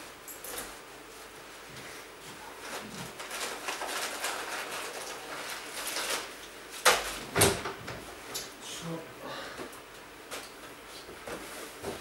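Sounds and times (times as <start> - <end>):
rustling and handling noises: 0.0 - 7.2.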